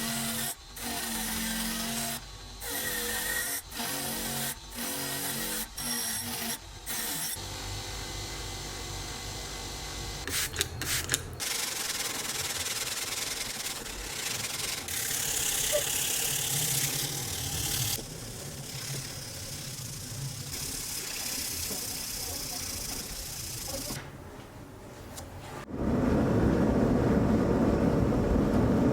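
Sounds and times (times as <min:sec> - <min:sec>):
sanding a surface: 0:11.4 - 0:24.0.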